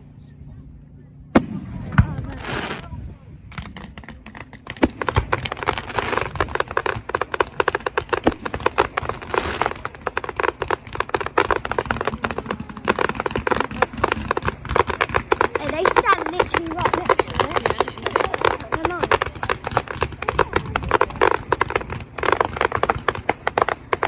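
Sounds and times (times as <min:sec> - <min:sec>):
fireworks crackling: 0:01.4 - 0:24.0.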